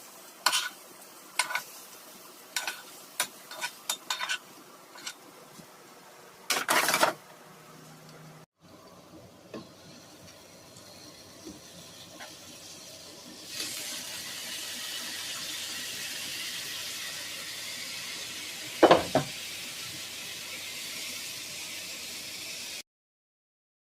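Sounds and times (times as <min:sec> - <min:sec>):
steady hiss: 0:00.0 - 0:06.5, 0:08.7 - 0:22.8.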